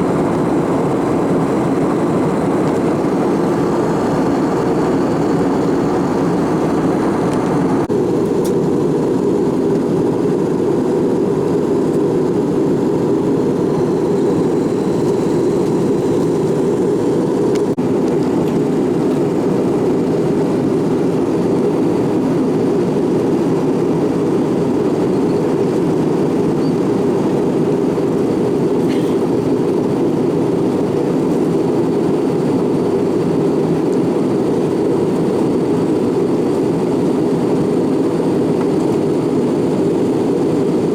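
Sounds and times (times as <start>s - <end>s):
jet engines and airflow rush: 0.0s - 40.9s.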